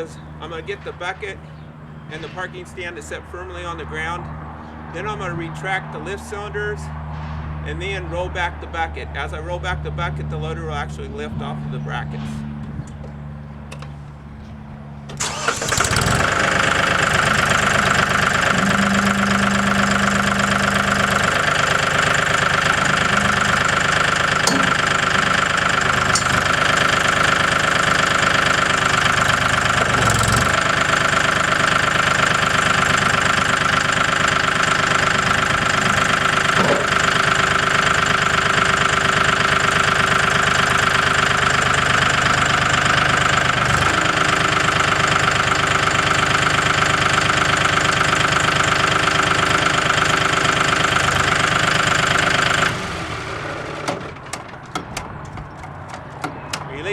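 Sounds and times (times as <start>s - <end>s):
tractor diesel engine running: 0.0s - 56.9s
loader hydraulics: 15.0s - 54.7s.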